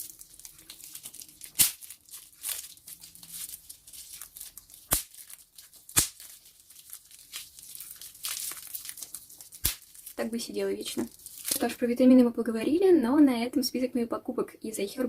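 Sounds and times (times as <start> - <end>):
bubble wrap bubbles popping: 0.0 - 11.9
bubble wrap crinkling: 0.0 - 12.1.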